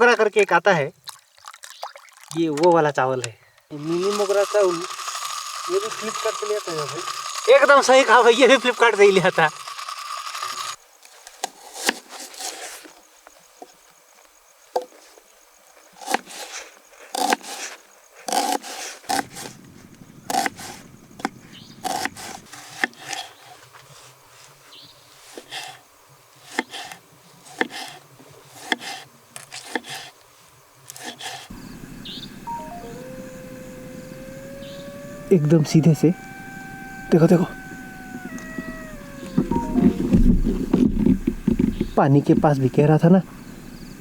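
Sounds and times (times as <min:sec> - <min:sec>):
insects humming: 0:03.0 - 0:44.0.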